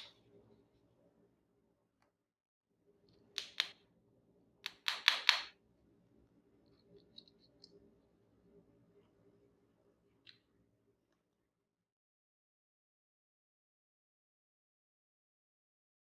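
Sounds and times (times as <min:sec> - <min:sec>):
plastic toy pieces clicking: 0:04.7 - 0:05.5.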